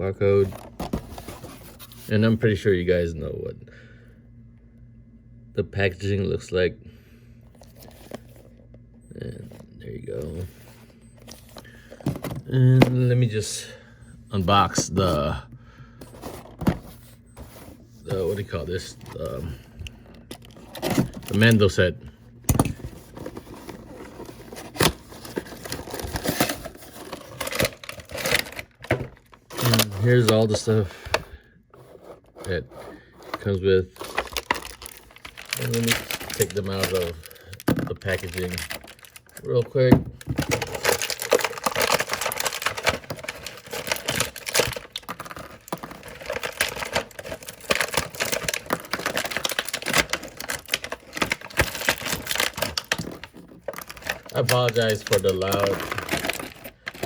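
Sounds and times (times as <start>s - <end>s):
packaging rustling and scraping: 0.2s - 2.6s, 7.5s - 13.6s, 16.0s - 57.0s
packaging clicks: 17.4s - 21.8s, 22.4s - 39.6s, 40.2s - 57.0s.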